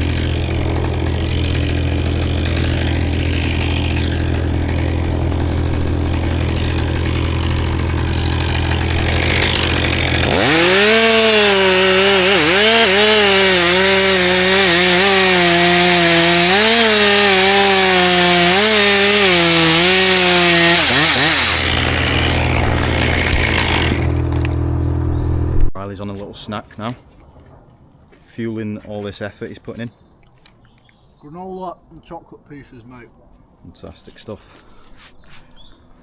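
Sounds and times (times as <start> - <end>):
chainsaw idling and cutting wood: 0.0 - 25.5.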